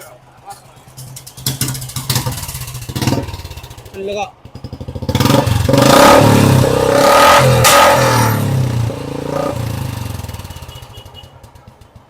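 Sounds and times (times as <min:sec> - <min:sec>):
motorcycle engine revving: 0:01.3 - 0:12.0
exhaust pop: 0:05.1 - 0:10.4.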